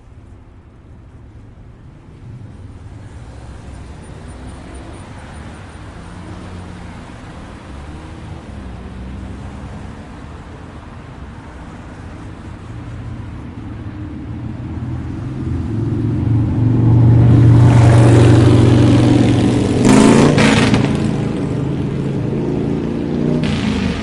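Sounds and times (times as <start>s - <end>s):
vehicle engine passing: 12.2s - 24.0s.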